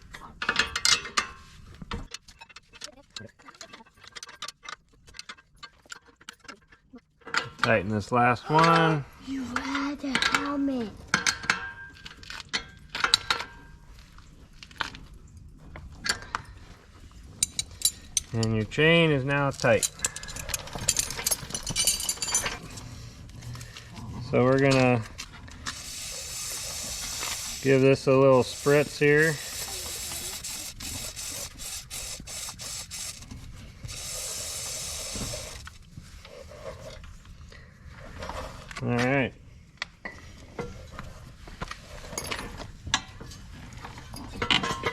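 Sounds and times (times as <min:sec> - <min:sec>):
hand tools clinking on metal: 0:00.4 - 0:01.4, 0:19.4 - 0:22.7
aerosol spray can hissing: 0:25.7 - 0:35.7.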